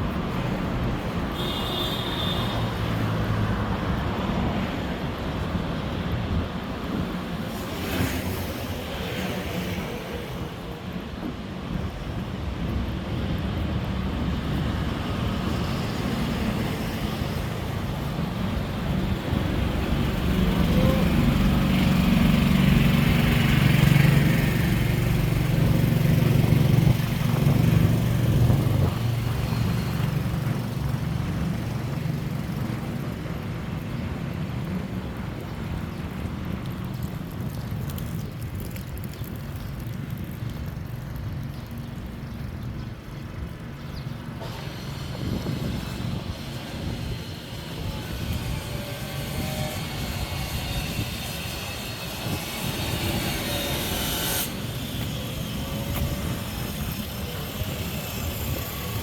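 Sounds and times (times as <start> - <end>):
road traffic rumble: 0.0 - 59.0.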